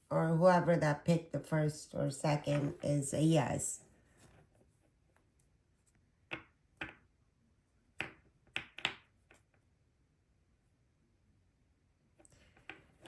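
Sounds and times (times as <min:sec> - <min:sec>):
hands tapping on table: 0:06.3 - 0:07.0, 0:08.0 - 0:09.4.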